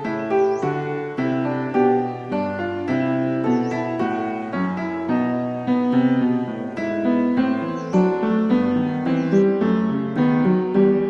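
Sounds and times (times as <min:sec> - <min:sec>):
piano melody: 0:00.0 - 0:11.0.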